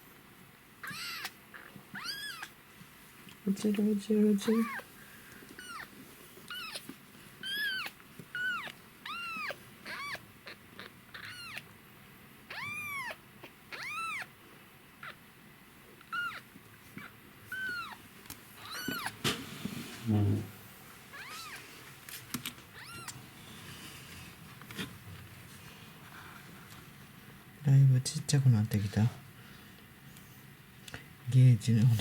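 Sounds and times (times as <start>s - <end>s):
kitten mewing: 0.8s - 2.5s, 4.5s - 4.9s, 5.6s - 5.9s, 7.4s - 11.7s, 12.5s - 14.3s, 16.0s - 18.0s, 18.6s - 19.2s.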